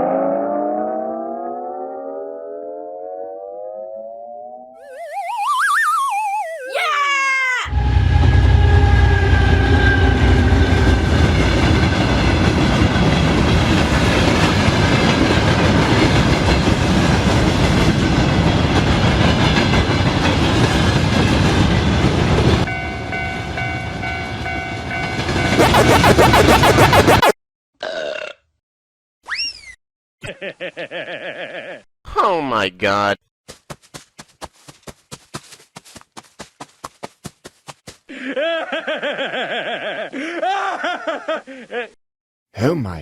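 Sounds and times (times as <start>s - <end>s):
steady multi-tone sound: 4.8s - 6.7s, 25.5s - 27.4s
held tones: 4.8s - 6.8s
train rumbling past: 7.7s - 25.6s.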